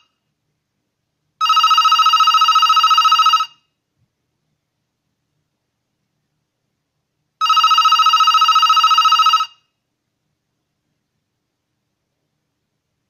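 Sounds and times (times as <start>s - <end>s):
telephone ringing: 1.4s - 3.7s, 7.4s - 9.7s.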